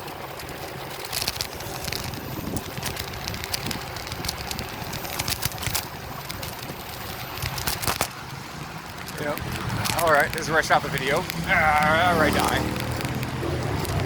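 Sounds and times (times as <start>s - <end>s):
small clicks and knocks: 0.0s - 11.4s, 12.6s - 14.0s
faint electric scooter motor: 0.0s - 14.0s
scooter wheels rumbling on pavement: 0.0s - 14.0s
wind rushing past microphone: 1.6s - 10.4s.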